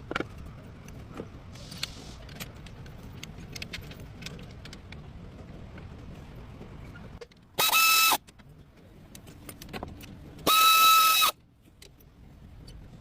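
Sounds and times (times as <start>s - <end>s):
low steady rumble: 0.0s - 7.6s.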